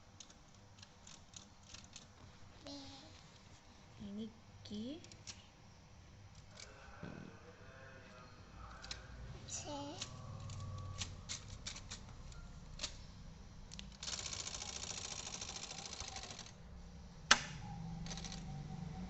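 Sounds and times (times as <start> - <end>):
rapid typewriter clicking: 0.2 - 2.1, 10.0 - 12.1, 13.8 - 16.6, 17.3 - 18.5
loud typewriter clack: 14.0 - 16.5, 18.0 - 18.4.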